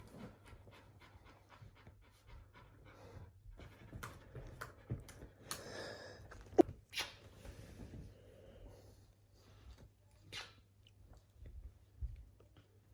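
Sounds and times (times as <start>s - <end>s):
dog panting: 0.0s - 5.4s.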